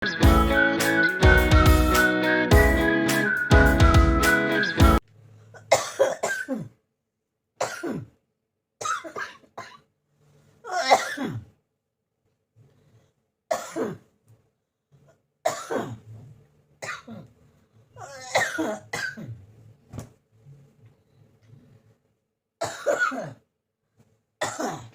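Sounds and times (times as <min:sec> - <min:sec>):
throat clearing: 0:05.5 - 0:06.8, 0:07.6 - 0:08.2, 0:10.7 - 0:11.6, 0:15.5 - 0:16.1, 0:16.8 - 0:17.3, 0:18.0 - 0:19.5, 0:22.6 - 0:23.5, 0:24.4 - 0:24.9
person coughing: 0:05.6 - 0:06.8, 0:07.6 - 0:08.2, 0:08.8 - 0:09.8, 0:10.7 - 0:11.5, 0:13.5 - 0:14.1, 0:15.5 - 0:16.0, 0:18.0 - 0:19.4, 0:22.6 - 0:23.4, 0:24.4 - 0:24.9.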